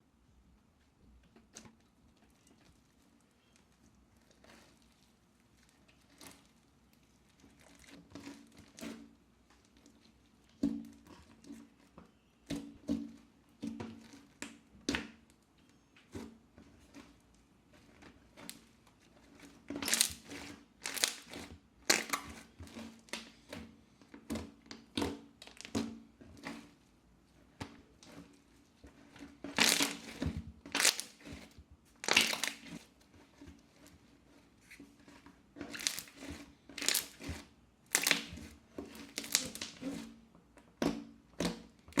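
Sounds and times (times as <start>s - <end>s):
slime squeezed crackling: 19.8s - 23.4s, 29.5s - 32.8s, 35.7s - 40.1s.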